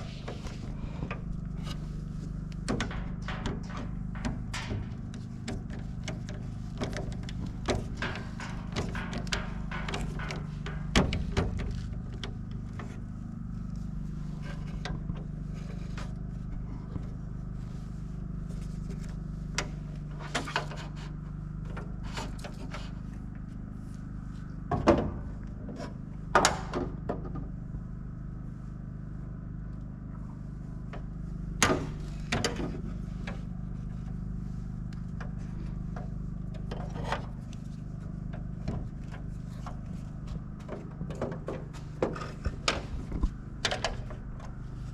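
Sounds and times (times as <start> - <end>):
clicks knocks and scrapes: 0.0 - 13.0, 18.6 - 23.1, 34.8 - 44.6
steady low hum: 0.0 - 44.9.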